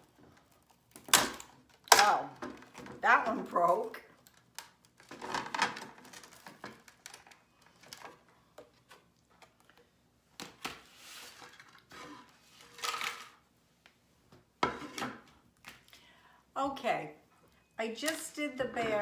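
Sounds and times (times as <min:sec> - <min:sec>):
candy clattering against plastic: 0:01.0 - 0:09.6, 0:12.6 - 0:13.4.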